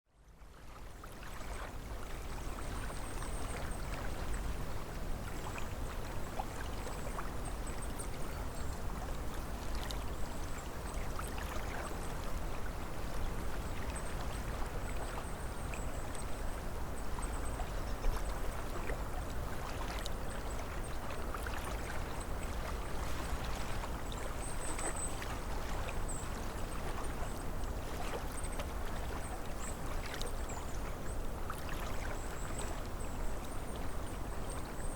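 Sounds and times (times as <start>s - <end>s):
low rumble of wind: 0.1s - 34.9s
waves lapping against shore: 0.7s - 34.9s.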